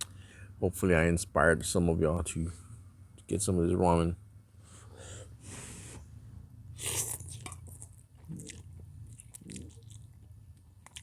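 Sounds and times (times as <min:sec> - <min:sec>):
steady low hum: 0:00.0 - 0:11.0
man chewing noodles: 0:06.8 - 0:11.0.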